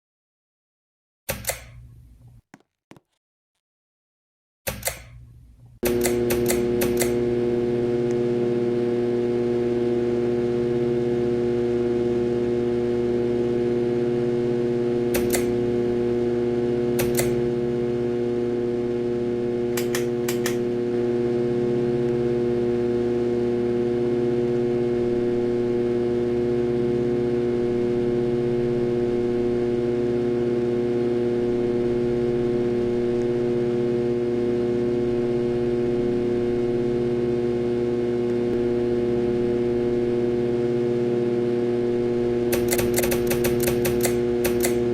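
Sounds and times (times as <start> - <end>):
sharp clicks: 1.3 - 1.8, 4.7 - 5.2, 15.1 - 15.5, 17.0 - 17.4, 19.7 - 20.6, 42.5 - 44.8
ceiling fan motor humming: 5.8 - 44.9.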